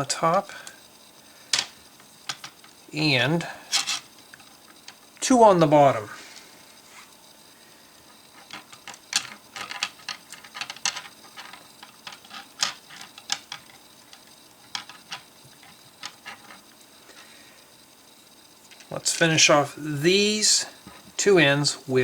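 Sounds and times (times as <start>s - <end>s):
plastic parts clicking: 8.4s - 16.6s.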